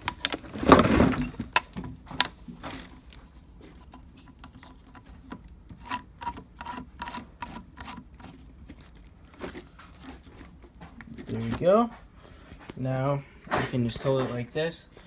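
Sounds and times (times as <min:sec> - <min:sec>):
handle threads clicking and rubbing: 0:00.0 - 0:11.9.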